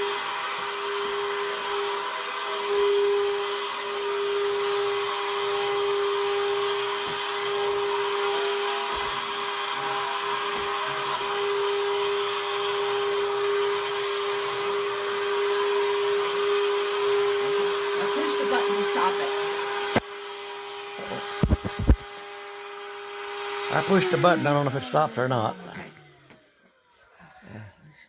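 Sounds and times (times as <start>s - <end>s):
vacuum cleaner running: 0.0s - 27.0s.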